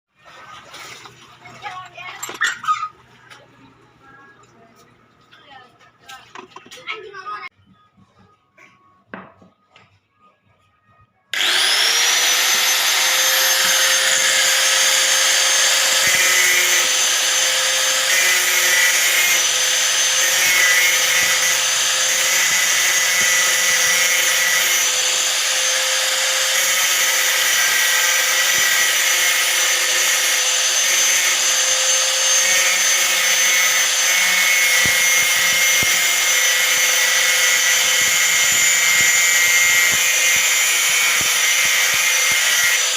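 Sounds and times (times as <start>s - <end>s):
angle grinder whining: 11.3s - 42.9s
grinding disc on iron nail: 11.4s - 42.9s.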